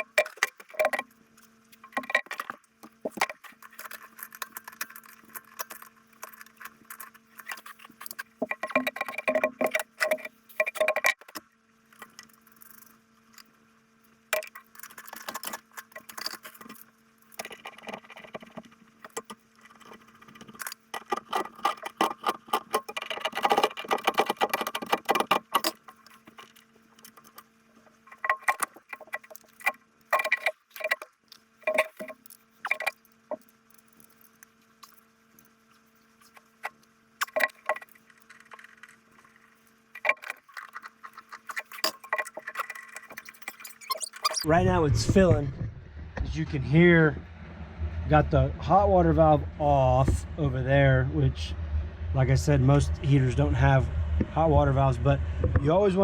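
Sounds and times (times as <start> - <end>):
steady low hum: 44.4 - 56.0.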